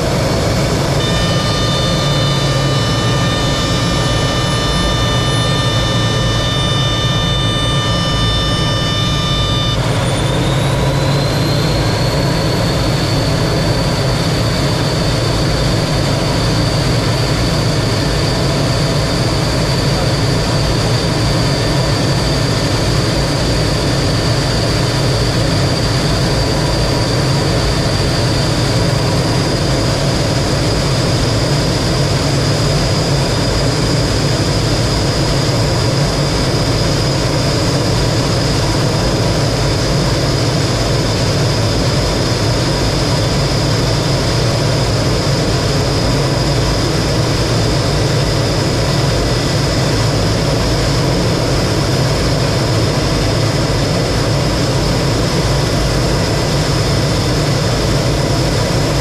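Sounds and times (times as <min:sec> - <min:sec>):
jet engine whine and rumble: 0:00.0 - 0:59.0
high tones: 0:00.1 - 0:12.2.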